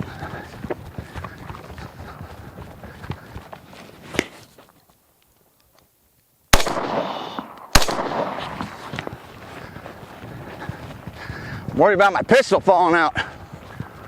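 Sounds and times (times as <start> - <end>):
loud gunshots with echo: 6.5 - 8.9.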